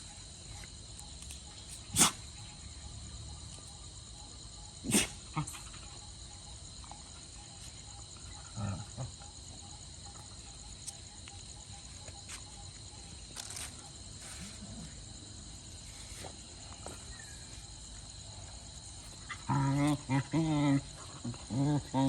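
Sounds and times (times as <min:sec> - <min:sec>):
insects chirring: 0:00.0 - 0:22.0.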